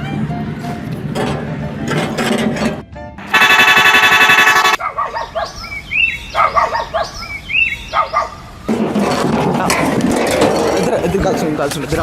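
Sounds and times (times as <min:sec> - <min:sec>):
truck horn blasting: 0:03.2 - 0:04.8.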